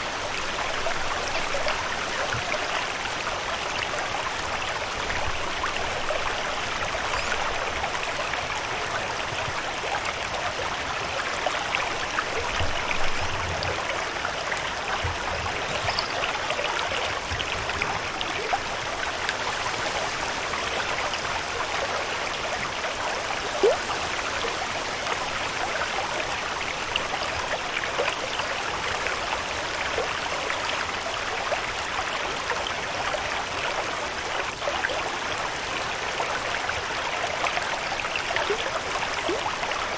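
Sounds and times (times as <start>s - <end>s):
water drips and patters: 0.0s - 39.9s
flowing water hiss: 11.8s - 31.5s.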